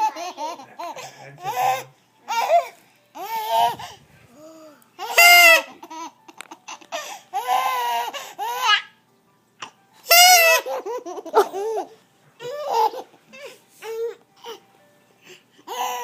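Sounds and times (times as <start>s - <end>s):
baby laughing and squealing: 0.0s - 3.9s, 5.0s - 6.1s, 10.1s - 13.6s.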